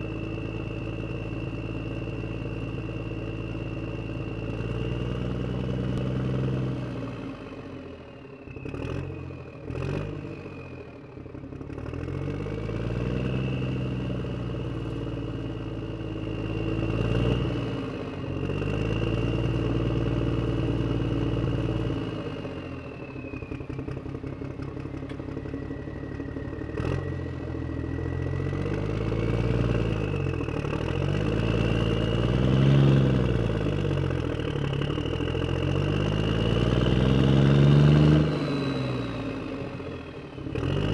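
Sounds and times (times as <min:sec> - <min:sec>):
motorcycle engine revving: 0:26.6 - 0:40.9.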